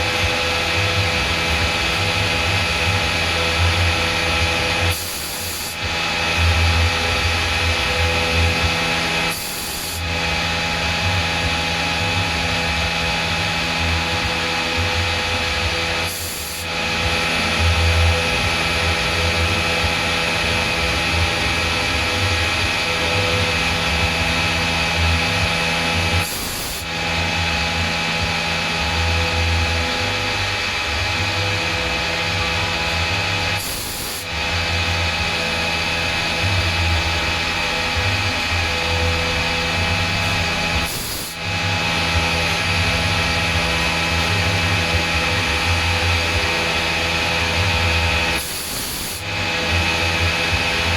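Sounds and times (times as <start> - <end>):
cnc machine humming and whining: 0.0 - 50.9
high hiss: 33.6 - 34.3, 35.8 - 41.4.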